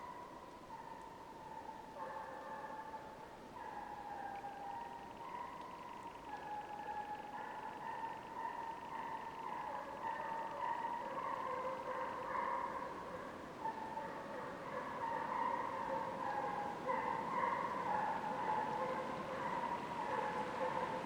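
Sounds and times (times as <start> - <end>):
hounds baying: 3.6 - 21.0.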